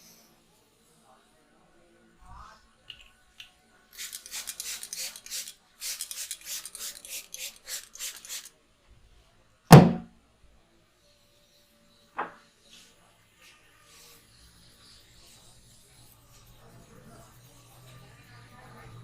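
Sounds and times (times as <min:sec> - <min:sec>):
loud smack: 0:09.7 - 0:10.1.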